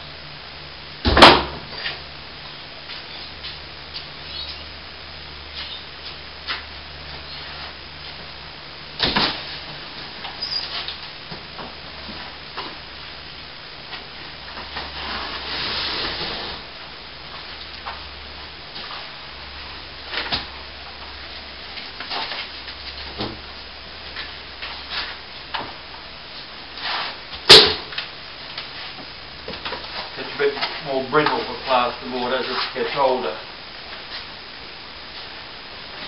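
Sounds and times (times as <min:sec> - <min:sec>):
sharp loud bang: 0:27.5 - 0:27.9.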